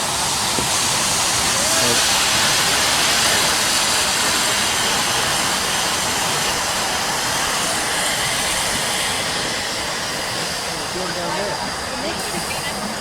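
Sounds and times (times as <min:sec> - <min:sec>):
steam locomotive hissing: 0:00.0 - 0:13.0.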